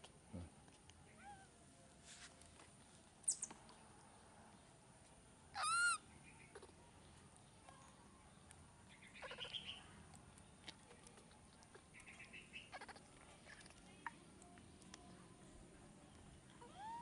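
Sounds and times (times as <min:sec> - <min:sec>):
baby monkey squeaky calls: 0:05.6 - 0:06.0, 0:09.1 - 0:09.8.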